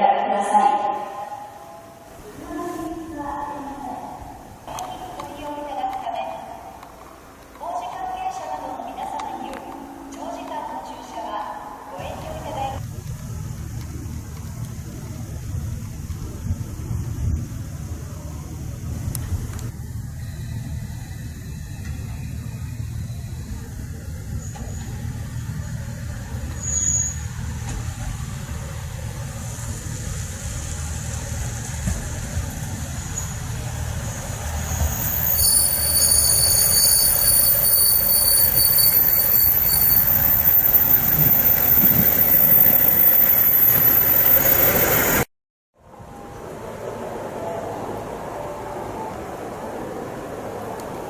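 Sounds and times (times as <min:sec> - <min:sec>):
train rumbling along track: 0:01.5 - 0:51.0
wheels squealing: 0:19.9 - 0:25.6, 0:26.2 - 0:27.9, 0:33.0 - 0:45.3.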